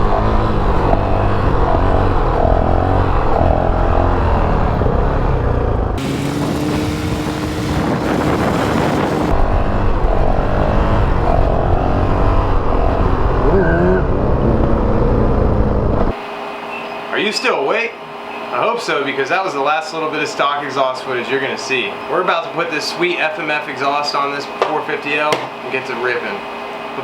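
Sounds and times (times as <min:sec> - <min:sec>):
motorcycle engine running: 0:00.0 - 0:09.6.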